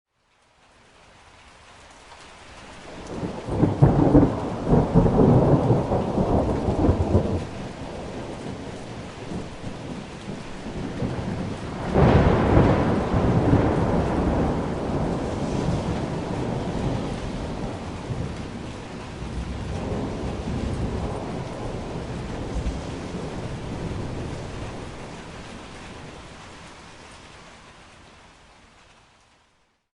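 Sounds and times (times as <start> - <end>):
steady rain: 0.1 - 29.9
thunder rolling: 2.9 - 26.5.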